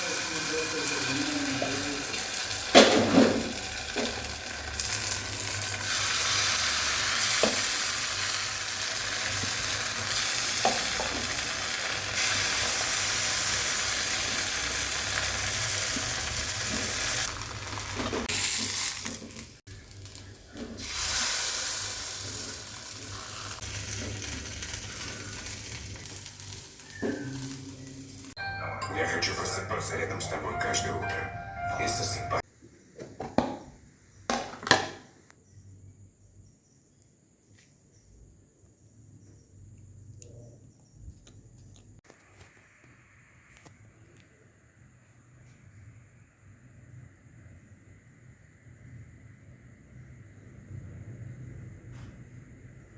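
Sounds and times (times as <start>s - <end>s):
food sizzling in a pan: 0.0s - 28.4s.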